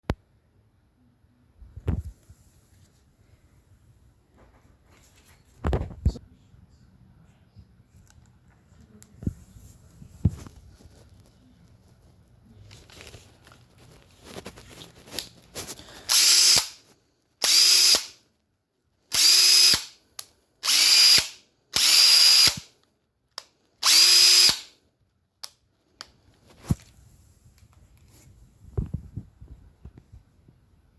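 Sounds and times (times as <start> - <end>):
cordless drill motor whining: 16.1 - 16.8, 17.4 - 18.1, 19.2 - 19.9, 20.6 - 22.6, 23.8 - 24.7.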